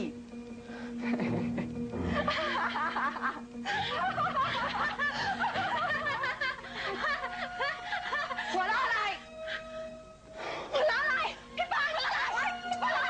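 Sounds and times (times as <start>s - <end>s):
soft background music: 0.0s - 13.0s
person snickering laughter: 1.0s - 7.5s.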